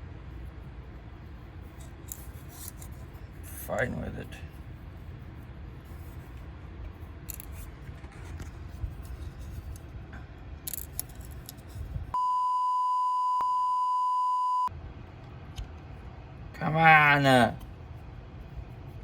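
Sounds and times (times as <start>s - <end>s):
electronic censor bleep: 12.2s - 14.7s.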